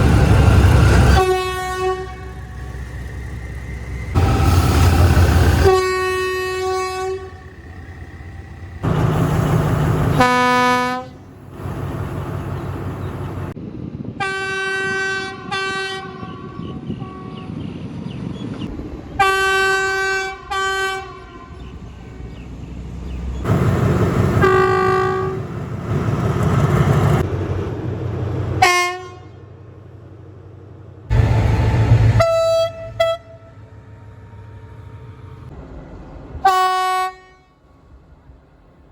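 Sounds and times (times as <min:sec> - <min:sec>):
low rumble of trains running: 0:00.0 - 0:38.9
diesel locomotive horn blasts: 0:00.1 - 0:03.2, 0:04.2 - 0:08.1, 0:08.8 - 0:11.7, 0:14.2 - 0:17.6, 0:19.2 - 0:22.4, 0:23.5 - 0:25.8, 0:28.6 - 0:29.4, 0:31.1 - 0:35.6, 0:36.4 - 0:37.7.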